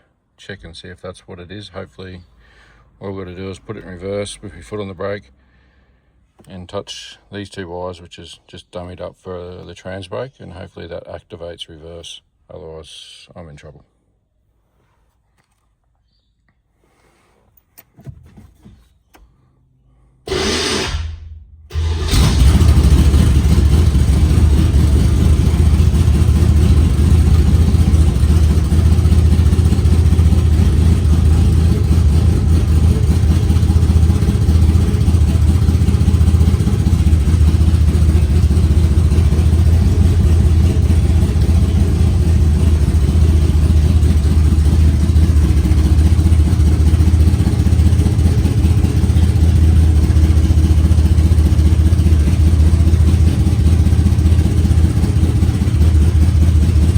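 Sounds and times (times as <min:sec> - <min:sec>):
car engine idling loudly: 0:20.3 - 0:21.1, 0:21.7 - 0:56.9.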